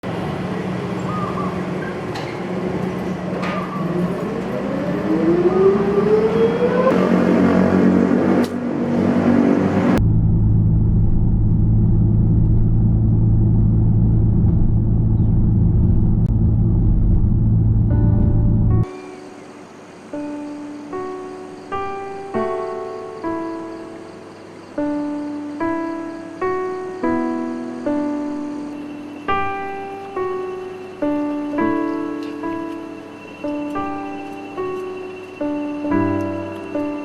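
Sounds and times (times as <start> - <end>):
road and engine drone: 0.0 - 18.9
car engine accelerating: 4.1 - 18.9.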